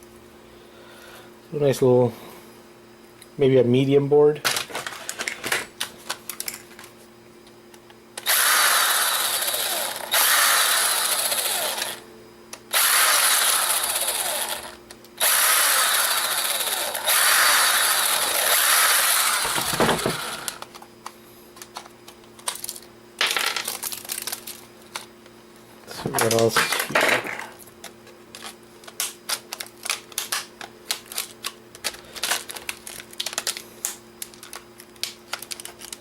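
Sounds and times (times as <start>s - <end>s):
small power driver running: 8.2s - 20.8s.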